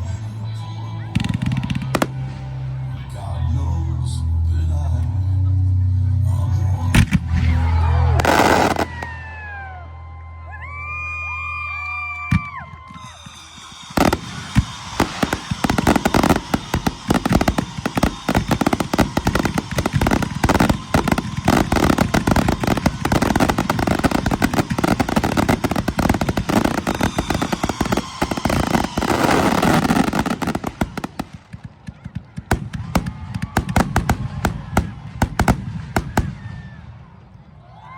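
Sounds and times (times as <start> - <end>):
firework whistling: 7.2 - 9.8, 11.8 - 31.7
firework shells bursting: 12.8 - 31.8.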